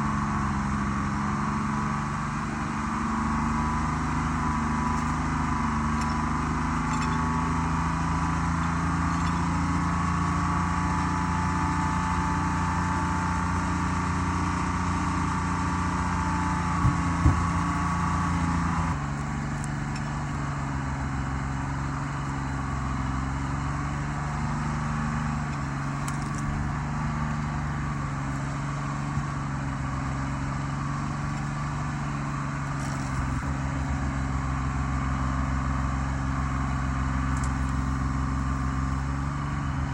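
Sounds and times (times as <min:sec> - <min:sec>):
diesel engine running: 0:00.0 - 0:39.9
short knocks: 0:16.8 - 0:17.7.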